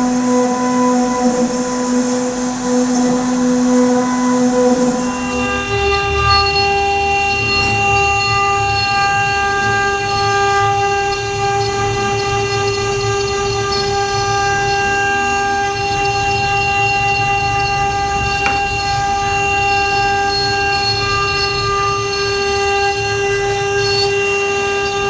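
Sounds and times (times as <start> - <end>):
router spindle whining: 5.0 - 25.0.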